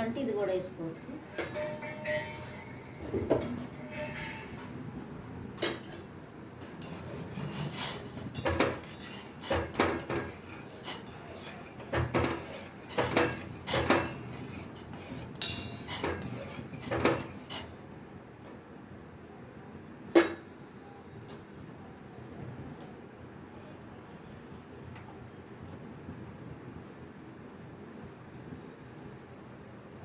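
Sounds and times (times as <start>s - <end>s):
spoon clinking against pan: 1.3s - 3.0s.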